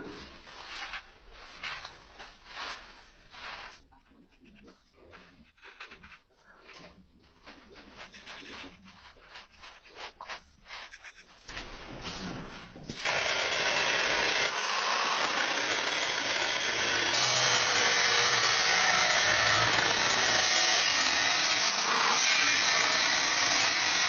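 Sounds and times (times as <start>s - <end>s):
power tool hissing on steel: 13.0s - 24.0s.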